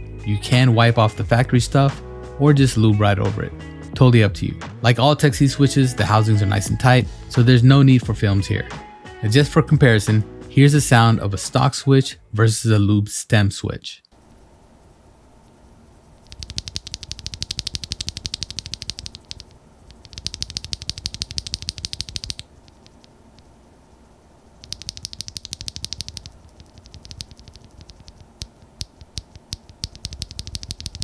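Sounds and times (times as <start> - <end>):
keyboard switches clacking: 16.3 - 23.5, 24.6 - 31.0.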